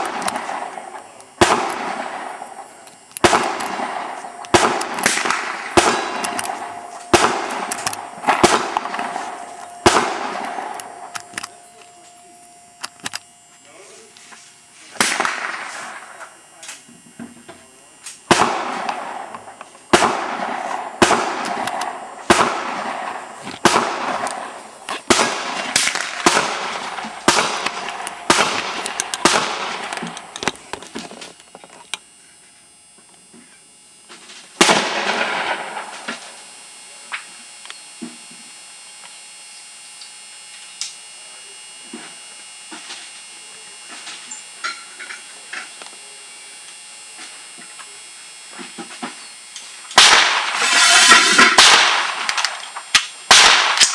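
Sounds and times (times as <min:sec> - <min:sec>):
rifle shots: 0:00.0 - 0:02.6, 0:03.2 - 0:11.6, 0:15.0 - 0:16.2, 0:18.3 - 0:30.9, 0:34.6 - 0:36.2, 0:50.0 - 0:53.9.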